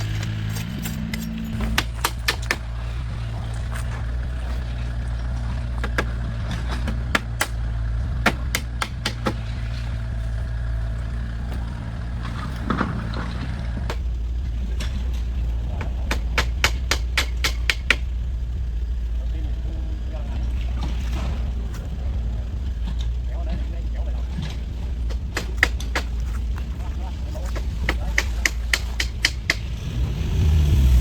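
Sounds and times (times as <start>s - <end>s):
sharp clicks and knocks: 0.0s - 4.7s, 5.4s - 7.6s, 8.2s - 10.0s, 14.7s - 18.1s, 24.3s - 29.7s
small engine running: 0.0s - 31.0s.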